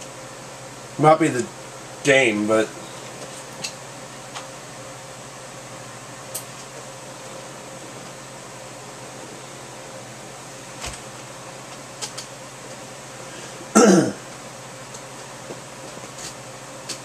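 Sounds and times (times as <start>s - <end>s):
background hum and hiss: 0.0s - 17.0s
person coughing: 13.7s - 14.2s.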